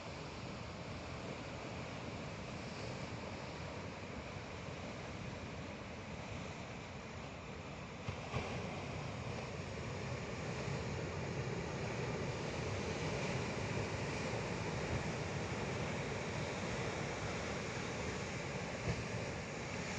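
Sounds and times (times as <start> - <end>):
sea surf washing in: 6.6 - 19.9.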